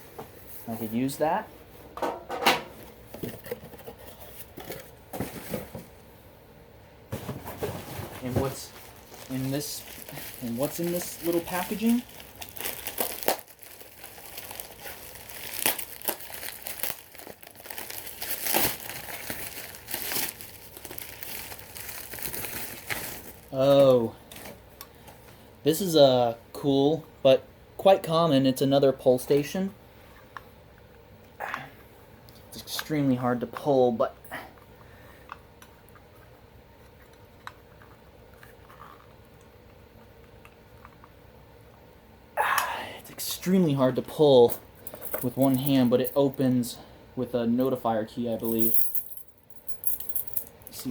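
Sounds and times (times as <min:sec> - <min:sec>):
packaging crinkling and rustling: 0:07.2 - 0:24.6.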